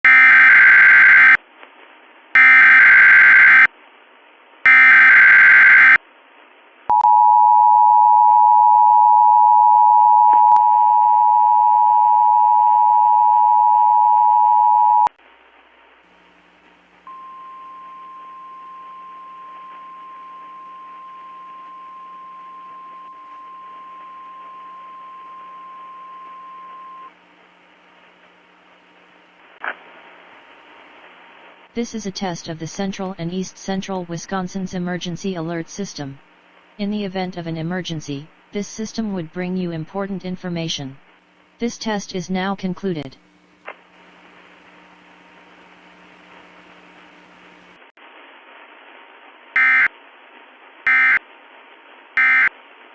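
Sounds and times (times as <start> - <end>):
header data screech: 0.0 - 1.4, 2.4 - 3.7, 4.7 - 6.0, 49.6 - 49.9, 50.9 - 51.2, 52.2 - 52.5
single steady tone: 17.0 - 27.2.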